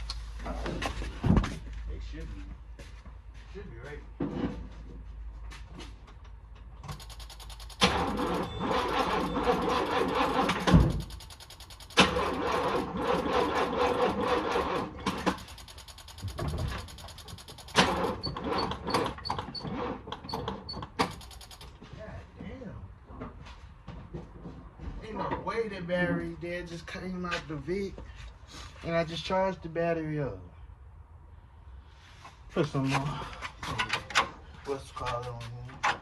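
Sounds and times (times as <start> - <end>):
starter cranking car engine: 6.9 - 19.7, 20.4 - 21.7.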